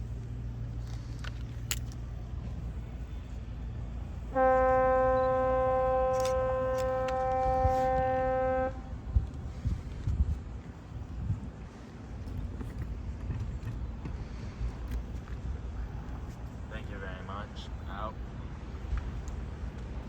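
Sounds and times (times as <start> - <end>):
ship horn blast: 4.2 - 9.6.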